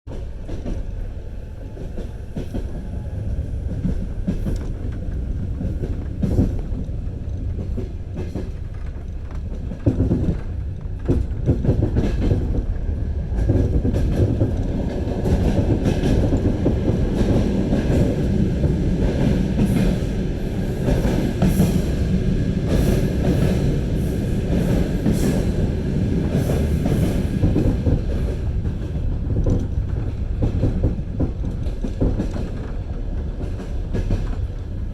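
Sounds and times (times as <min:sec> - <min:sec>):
train wheels clicking over rail joints: 0:00.1 - 0:34.9.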